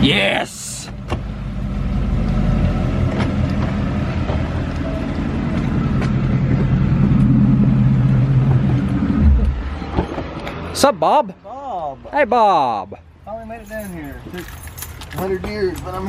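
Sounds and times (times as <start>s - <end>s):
car engine running: 0.9s - 10.5s.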